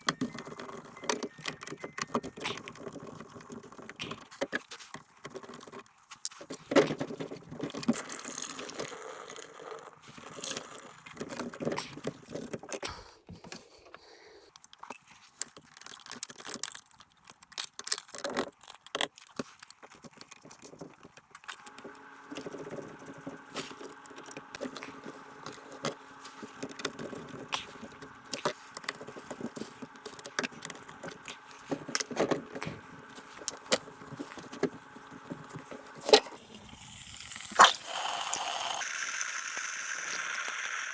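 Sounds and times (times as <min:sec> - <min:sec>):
motor humming: 0:21.5 - 0:40.9.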